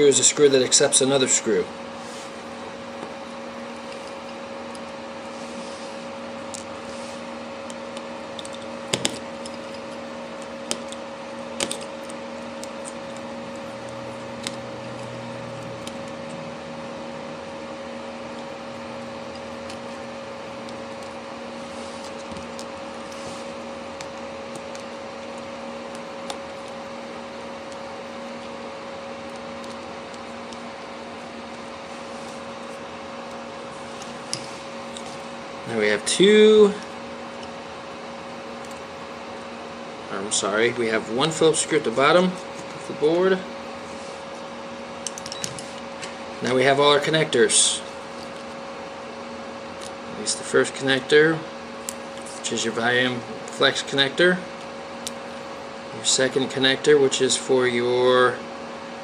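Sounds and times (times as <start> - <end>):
steady background hum: 0.0 - 59.0.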